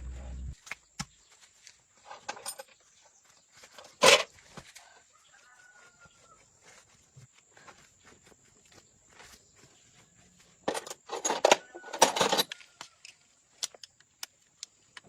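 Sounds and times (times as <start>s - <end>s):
metal parts clinking and rattling: 10.7s - 12.6s.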